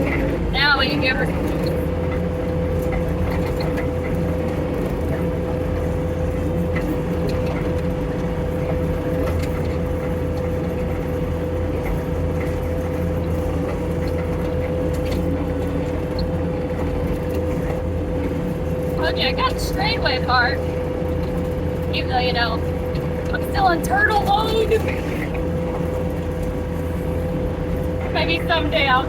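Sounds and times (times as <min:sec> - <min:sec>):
thin steady whine: 0:00.0 - 0:04.6, 0:16.2 - 0:29.0
skid steer engine running: 0:00.0 - 0:29.0.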